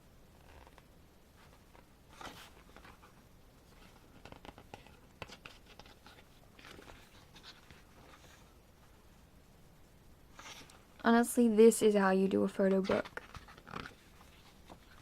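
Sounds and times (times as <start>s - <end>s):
book pages rustling and turning: 0.4s - 9.0s, 10.3s - 11.1s, 12.6s - 15.0s.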